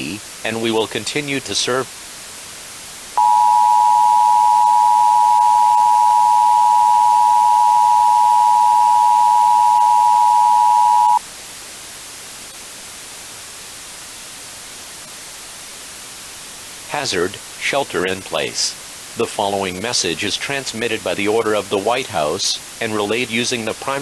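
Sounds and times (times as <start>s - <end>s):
static hiss: 0.0s - 24.0s
two-tone attention signal: 3.2s - 11.2s.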